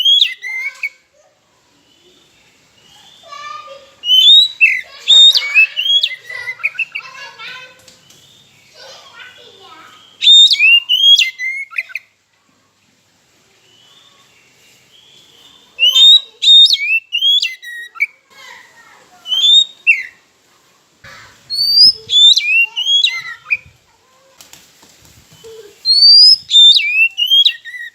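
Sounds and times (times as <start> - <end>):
bird singing whistled phrases: 0.0 - 1.0, 3.9 - 7.0, 9.9 - 12.0, 15.5 - 18.2, 19.2 - 20.2, 21.5 - 23.7, 25.4 - 27.9.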